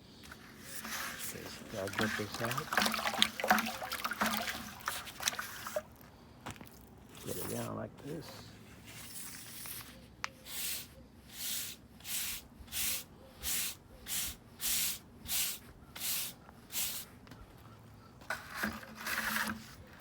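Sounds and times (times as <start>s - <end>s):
hand tool scraping cement slurry: 0.6s - 5.8s, 18.3s - 20.0s.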